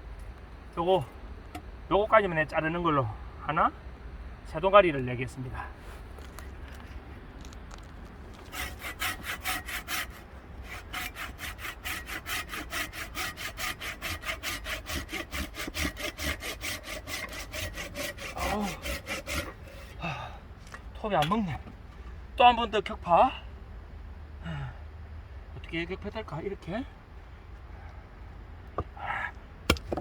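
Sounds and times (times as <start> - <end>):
hand saw cutting wood: 8.4 - 20.2.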